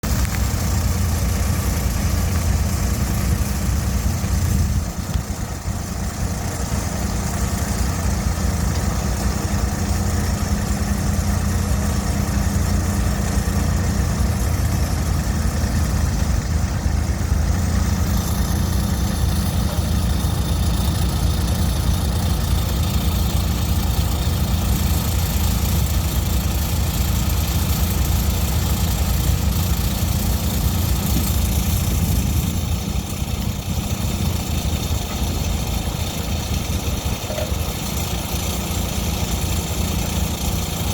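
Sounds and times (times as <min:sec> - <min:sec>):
loader engine idling: 0:00.0 - 0:40.9.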